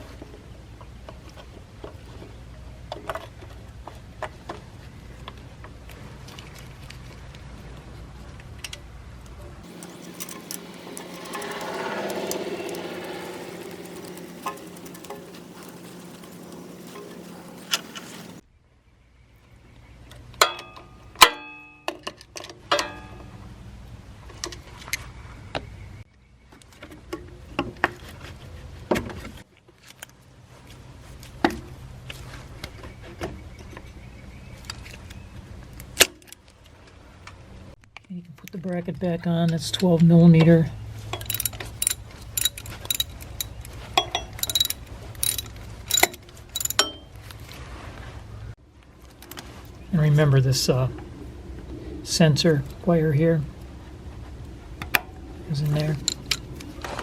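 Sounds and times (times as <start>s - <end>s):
steady low hum: 9.6s - 18.4s
metal tools clicking lightly: 9.7s - 18.4s, 41.1s - 47.2s
sharp metallic knocks: 22.7s - 23.4s, 41.1s - 47.2s.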